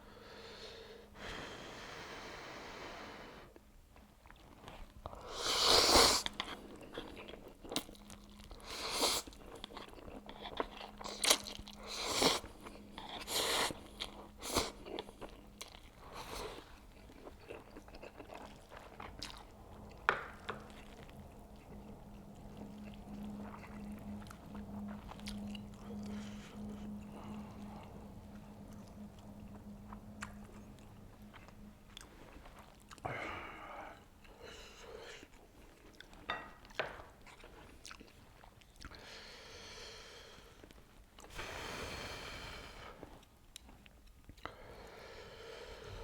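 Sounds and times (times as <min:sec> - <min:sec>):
person chewing: 0:04.2 - 0:39.2
person slurping and biting noodles: 0:05.3 - 0:06.3.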